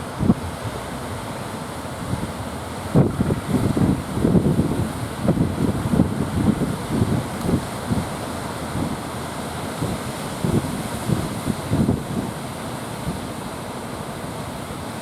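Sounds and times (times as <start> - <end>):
wind buffeting microphone: 0.0 - 9.0, 9.8 - 12.4
surf rushing: 0.0 - 15.0.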